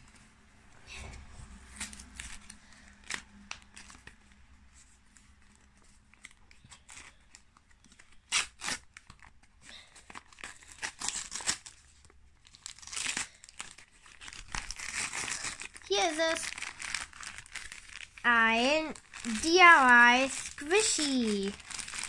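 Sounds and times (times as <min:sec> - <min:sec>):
plastic packet tearing and crinkling: 0:01.6 - 0:04.4, 0:05.4 - 0:22.0.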